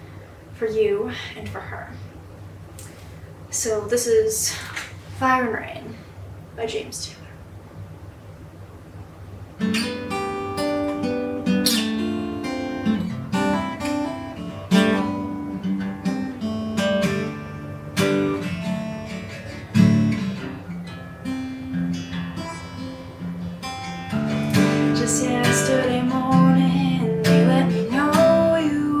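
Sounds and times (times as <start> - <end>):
acoustic guitar playing: 9.6 - 29.0.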